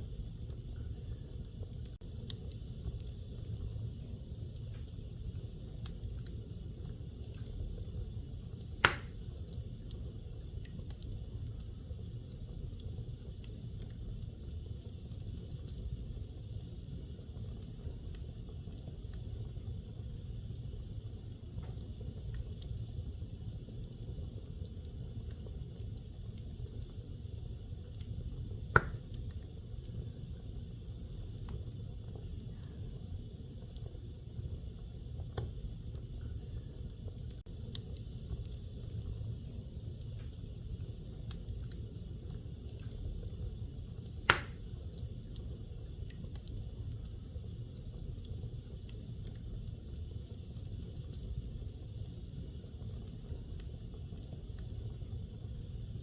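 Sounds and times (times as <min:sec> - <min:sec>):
fire crackling in fireplace: 0:00.0 - 0:56.0
sharp loud pops of fire: 0:08.8 - 0:09.4, 0:28.7 - 0:29.2, 0:44.2 - 0:44.8.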